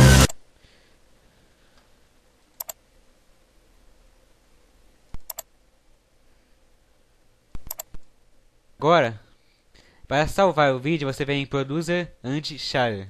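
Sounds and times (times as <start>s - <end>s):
computer mouse clicking: 2.6s - 2.8s, 5.1s - 5.5s, 7.5s - 8.1s.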